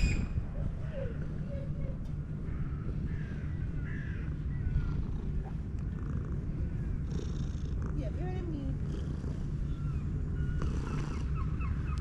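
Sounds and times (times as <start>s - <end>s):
cat purring: 4.2s - 11.4s.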